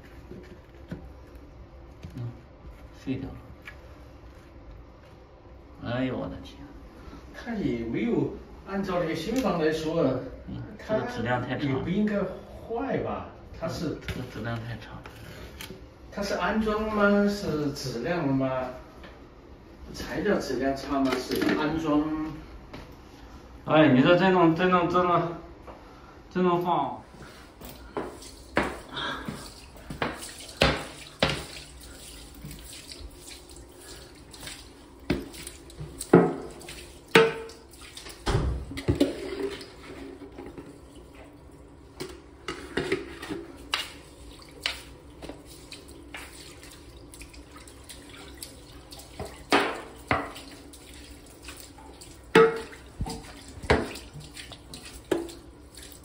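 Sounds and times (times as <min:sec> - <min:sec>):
water sloshing and trickling: 0:27.2 - 0:56.0.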